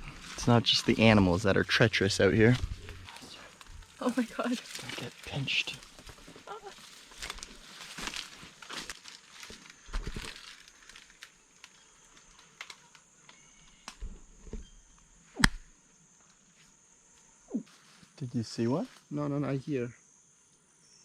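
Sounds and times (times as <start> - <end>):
high-pitched cricket chorus: 0.0 - 21.0
rustling in undergrowth: 2.2 - 14.3
small ticks: 10.4 - 14.0
sharp click: 15.4 - 15.7.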